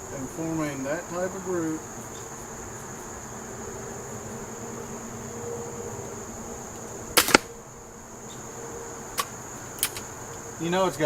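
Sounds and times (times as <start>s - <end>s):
air pistol shot crack: 7.2s - 7.6s.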